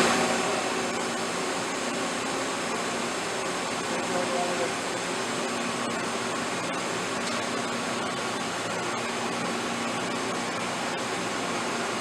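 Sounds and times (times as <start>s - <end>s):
boring mill whirring hum: 0.0s - 12.0s.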